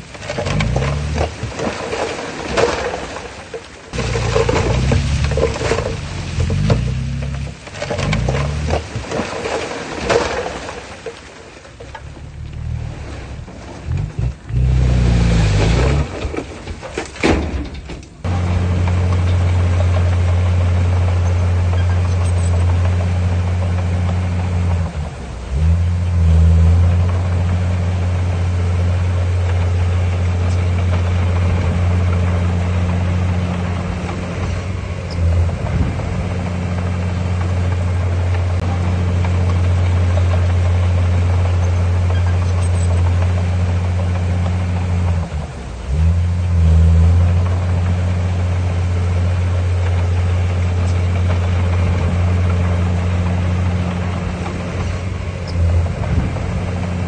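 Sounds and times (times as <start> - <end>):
diesel engine running: 0.0 - 16.9, 18.2 - 57.0.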